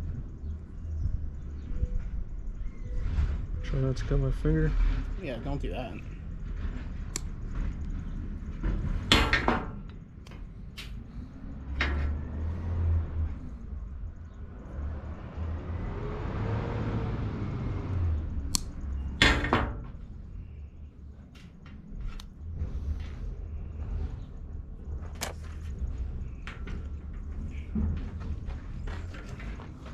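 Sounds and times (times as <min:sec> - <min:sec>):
tools clicking and knocking: 0:08.6 - 0:12.5, 0:18.4 - 0:20.0.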